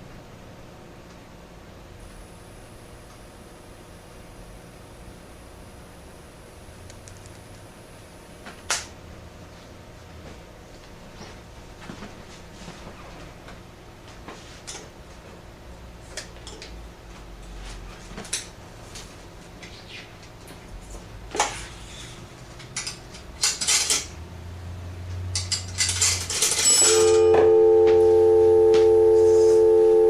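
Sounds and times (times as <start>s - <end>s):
low hum: 26.8s - 30.0s.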